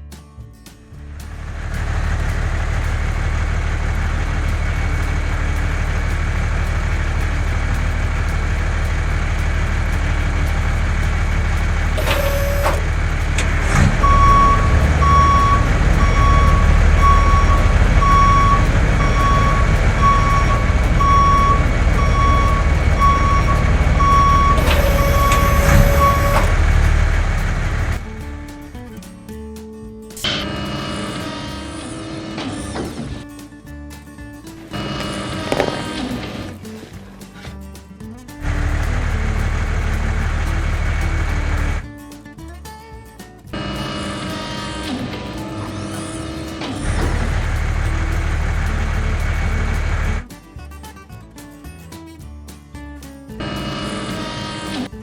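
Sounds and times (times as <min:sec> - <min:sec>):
diesel construction vehicle engine: 0:00.9 - 0:42.4, 0:43.4 - 0:51.1, 0:53.4 - 0:55.0
reversing alarm beeping: 0:12.0 - 0:28.0.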